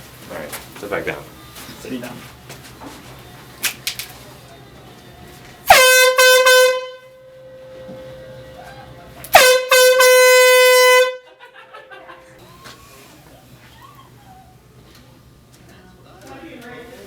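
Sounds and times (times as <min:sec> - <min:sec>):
air horn blasts: 0:05.6 - 0:12.4.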